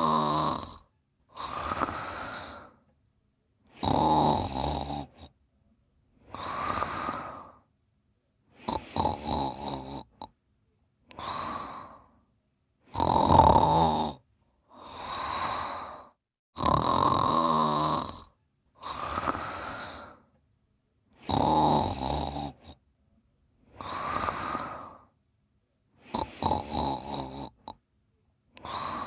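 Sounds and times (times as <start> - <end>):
person snoring: 0.0 - 2.8, 3.7 - 5.3, 6.2 - 7.6, 8.5 - 10.3, 11.1 - 12.2, 12.8 - 20.2, 21.2 - 22.8, 23.7 - 25.1, 26.0 - 27.8, 28.6 - 29.0
soft breathy breaths: 0.0 - 2.9, 6.1 - 7.7, 11.0 - 12.3, 14.6 - 16.2, 18.7 - 20.4, 23.6 - 25.2, 28.5 - 29.0.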